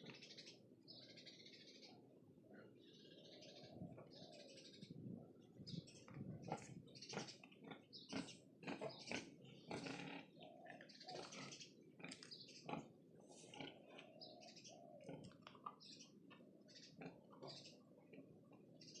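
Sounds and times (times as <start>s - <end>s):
pigs grunting and squealing: 6.4s - 15.8s, 16.8s - 18.4s.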